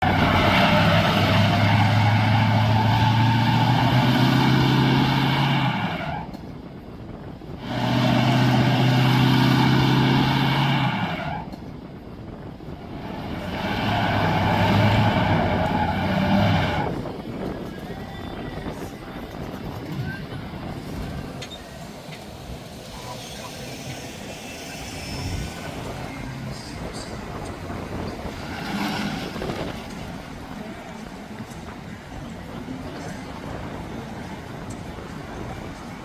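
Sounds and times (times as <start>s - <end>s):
engine revving hard: 0.0s - 6.1s, 7.6s - 11.5s, 12.9s - 17.0s.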